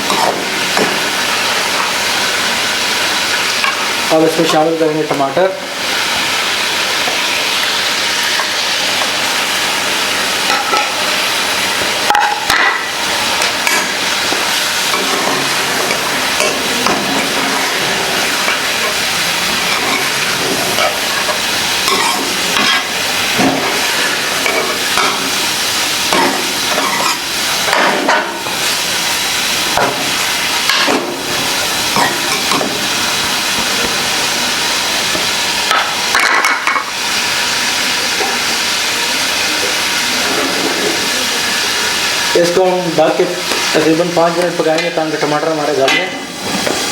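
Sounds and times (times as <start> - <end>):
food sizzling in hot oil: 0.0 - 46.9
spoon scraping a pot: 19.6 - 25.3, 26.1 - 28.4.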